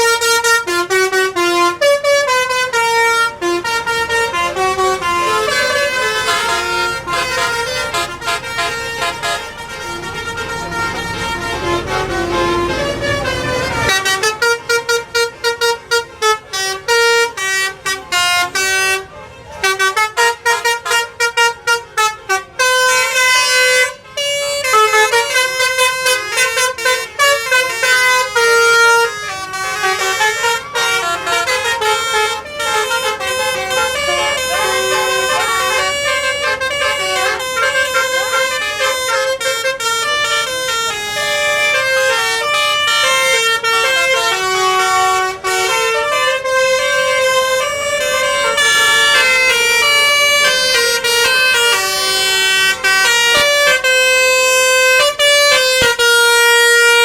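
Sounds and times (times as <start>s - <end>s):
multi-tone air horns playing melody: 0.0s - 57.0s.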